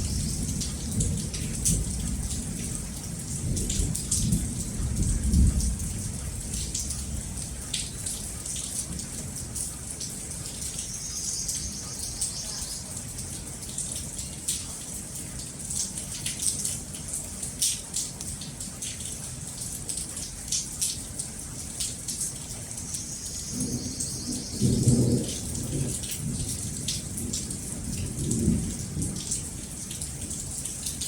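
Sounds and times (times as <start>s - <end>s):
low rumble of thunder: 0.0s - 8.1s, 23.2s - 31.0s
rain drops ticking: 0.0s - 31.0s.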